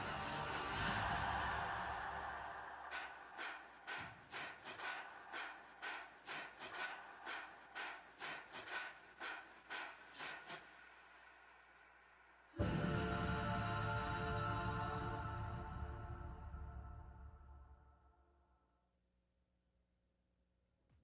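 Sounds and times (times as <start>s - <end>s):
person gasping breaths: 0.7s - 10.8s.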